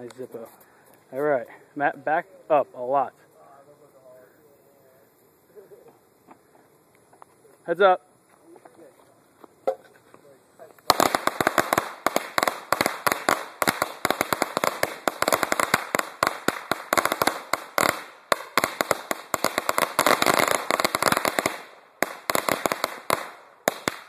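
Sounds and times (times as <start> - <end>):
firecrackers banging: 9.4 - 24.0.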